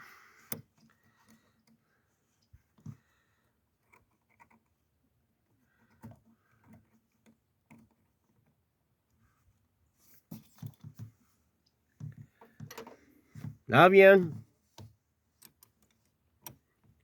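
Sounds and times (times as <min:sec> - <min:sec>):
faint clicks and knocks: 0:00.5 - 0:09.2, 0:10.4 - 0:13.6.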